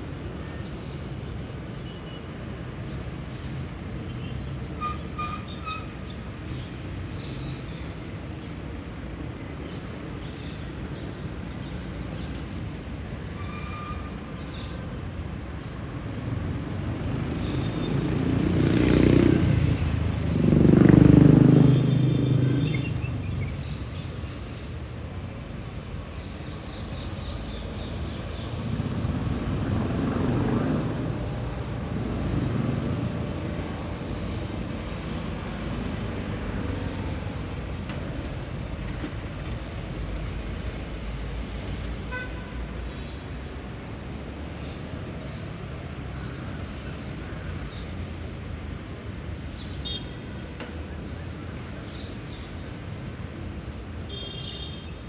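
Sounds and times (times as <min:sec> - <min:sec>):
low traffic rumble: 0:02.7 - 0:54.6
quieter vehicles passing: 0:09.2 - 0:54.2
vehicle passing loudly: 0:18.0 - 0:22.6.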